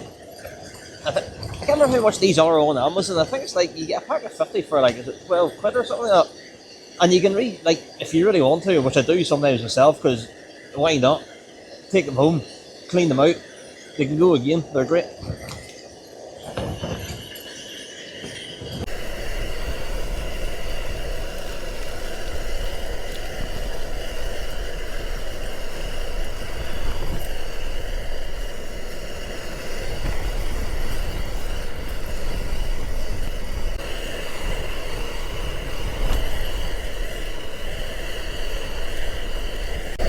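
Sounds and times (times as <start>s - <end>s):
strong wind buffeting a tent: 0.0s - 4.2s, 18.1s - 40.0s.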